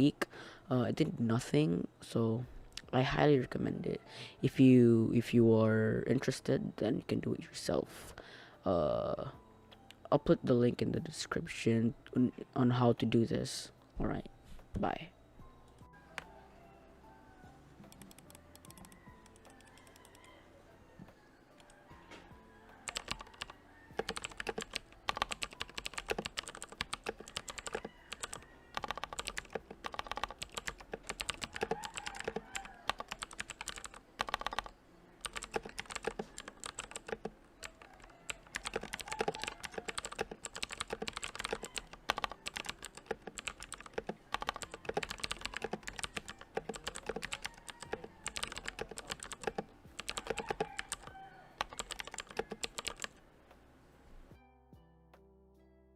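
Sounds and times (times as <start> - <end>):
clicky mechanical keyboard typing: 17.9 - 20.2, 22.8 - 53.1.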